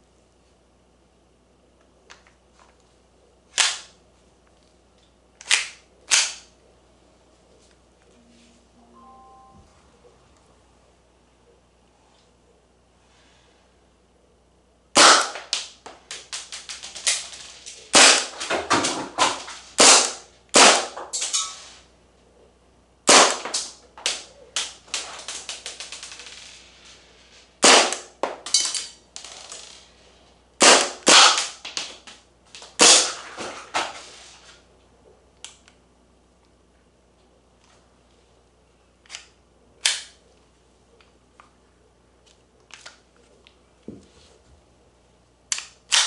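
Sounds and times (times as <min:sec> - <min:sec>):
airsoft pistol firing: 0:15.0 - 0:15.7, 0:17.9 - 0:18.9, 0:19.8 - 0:21.0, 0:23.1 - 0:24.8, 0:27.6 - 0:28.1, 0:30.6 - 0:31.6, 0:32.8 - 0:33.2.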